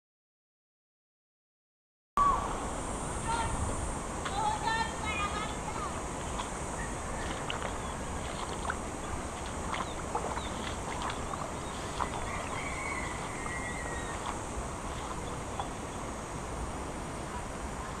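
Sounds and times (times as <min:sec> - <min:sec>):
high-pitched insect drone: 0:02.3 - 0:16.3
warbling bird call: 0:05.0 - 0:16.1
small water splashes: 0:05.8 - 0:15.9.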